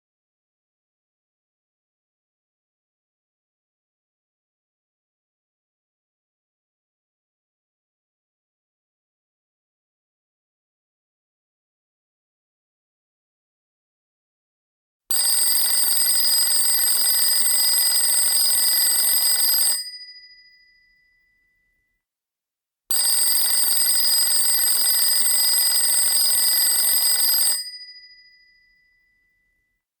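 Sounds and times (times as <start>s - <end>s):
alarm bell ringing: 15.1s - 21.7s, 22.9s - 29.6s.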